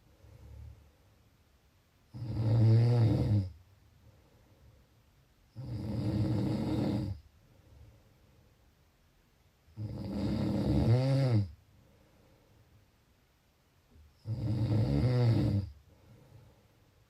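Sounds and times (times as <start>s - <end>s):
faint breathing: 0.0s - 1.4s, 3.8s - 5.2s, 7.2s - 8.8s, 11.6s - 12.9s, 15.7s - 17.0s
person snoring: 2.1s - 3.6s, 5.5s - 7.2s, 9.7s - 11.6s, 14.2s - 15.8s.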